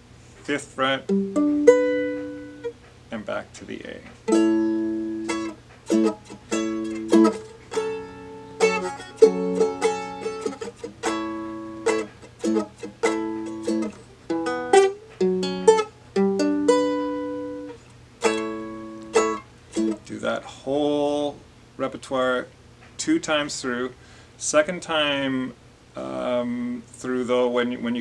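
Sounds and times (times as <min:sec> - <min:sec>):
strummed string chords: 0:00.8 - 0:03.3, 0:04.3 - 0:20.4.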